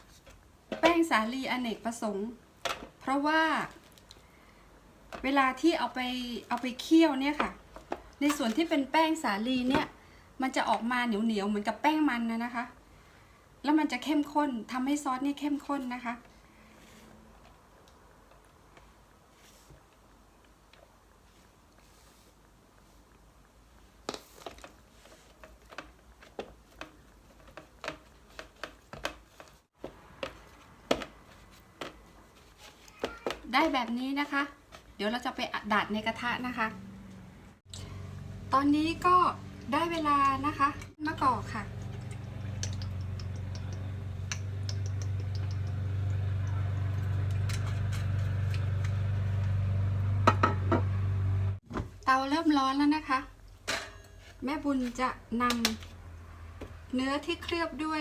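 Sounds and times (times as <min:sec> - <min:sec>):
kitchen appliance humming: 0:36.0 - 0:51.6
hands patting meat in flour: 0:42.6 - 0:47.4.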